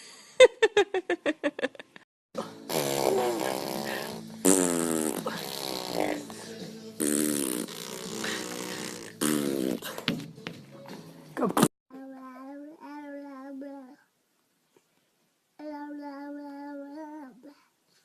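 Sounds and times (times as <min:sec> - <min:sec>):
baby blowing raspberries: 0:02.5 - 0:10.0.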